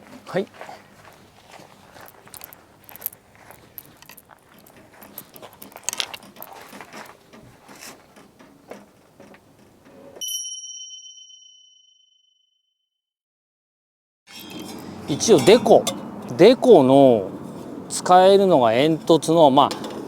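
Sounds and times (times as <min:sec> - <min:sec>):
metal parts clinking: 0:03.8 - 0:07.4
bright ding chime: 0:10.2 - 0:12.2.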